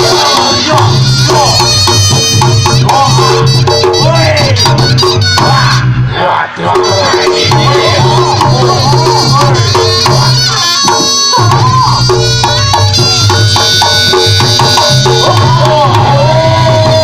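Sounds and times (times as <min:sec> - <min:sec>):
hand drums in quick rhythm: 0:00.0 - 0:05.8, 0:06.8 - 0:17.0
wavering melody with held tones: 0:06.8 - 0:15.6.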